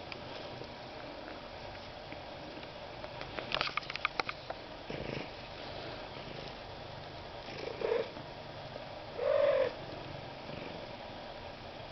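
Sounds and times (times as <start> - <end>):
cat purring: 4.9 - 6.6, 7.4 - 8.2, 9.2 - 11.0
cat calling: 9.2 - 9.8.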